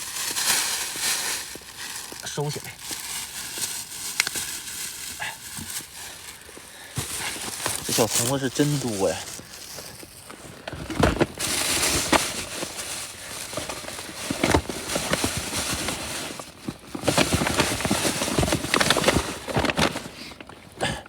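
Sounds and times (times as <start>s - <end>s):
bags rustling and crinkling: 0.0s - 21.0s.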